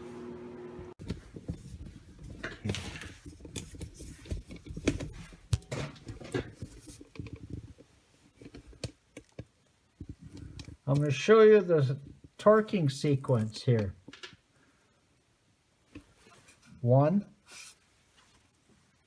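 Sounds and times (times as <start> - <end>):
rustling: 1.0 - 11.3.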